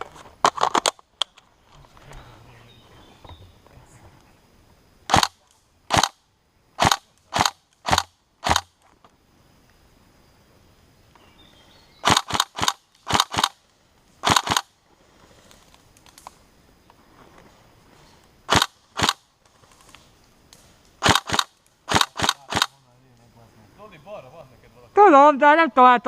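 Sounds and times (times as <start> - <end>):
airsoft rifle shots: 5.1 - 6.2, 6.8 - 8.8, 12.0 - 13.6, 14.2 - 14.7, 18.5 - 19.2, 21.0 - 22.8.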